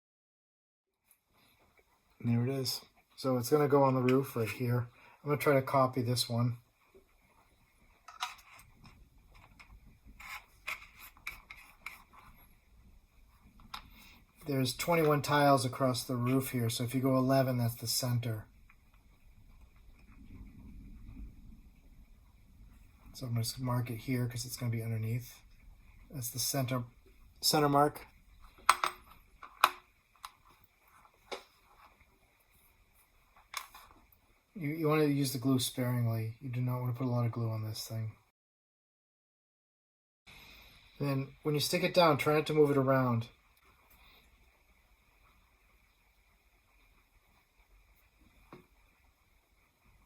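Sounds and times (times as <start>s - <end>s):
plastic parts clicking and scraping: 8.0s - 12.4s, 28.5s - 32.0s, 33.4s - 34.1s.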